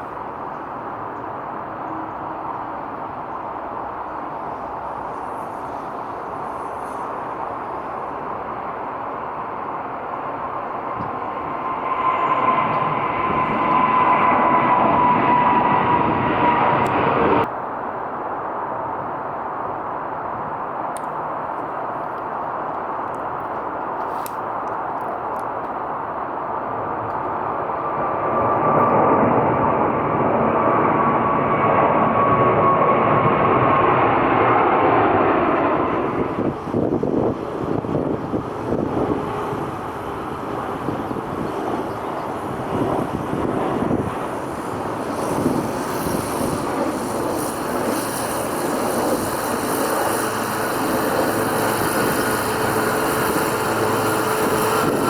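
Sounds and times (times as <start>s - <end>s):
jet airliner engines whining: 0.0s - 17.5s, 19.5s - 55.0s
jet engine roar: 0.0s - 55.0s.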